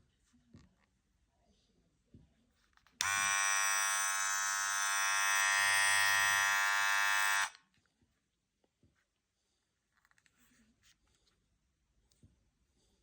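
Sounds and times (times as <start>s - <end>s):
loud electric buzz: 3.0s - 7.6s.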